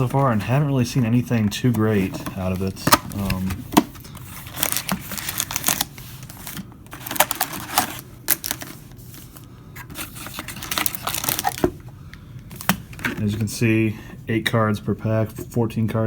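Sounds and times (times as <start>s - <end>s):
cardboard and wrapper crinkling: 1.1s - 11.8s.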